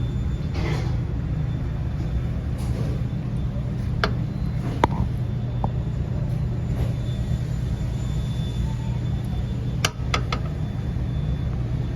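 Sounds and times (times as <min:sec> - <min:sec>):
refrigerator humming: 0:00.0 - 0:11.9.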